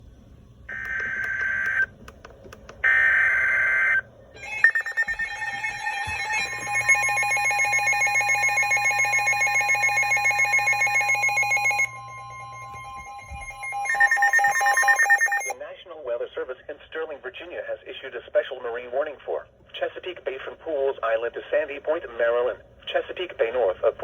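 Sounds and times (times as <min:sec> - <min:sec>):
two-tone attention signal: 0:02.9 - 0:15.6.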